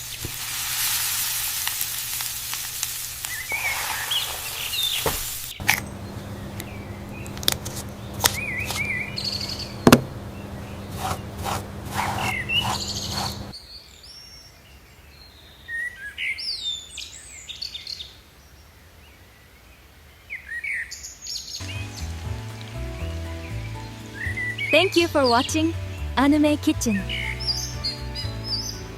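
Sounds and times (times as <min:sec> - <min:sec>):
small birds chirping: 0:03.2 - 0:19.5, 0:20.2 - 0:28.9
sharp clicks and knocks: 0:05.0 - 0:13.5
steady low hum: 0:05.5 - 0:13.5.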